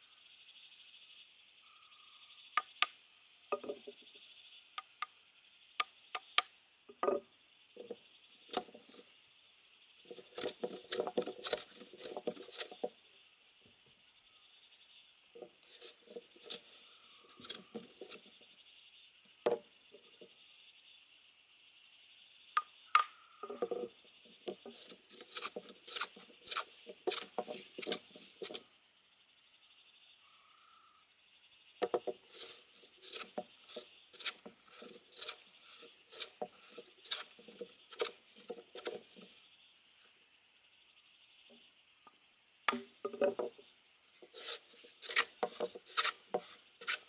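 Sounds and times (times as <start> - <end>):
insects chirring: 0.0 - 47.0
scraping wood: 7.8 - 9.0, 10.1 - 12.9, 15.4 - 18.3, 23.4 - 28.6, 31.8 - 39.3, 44.2 - 47.0.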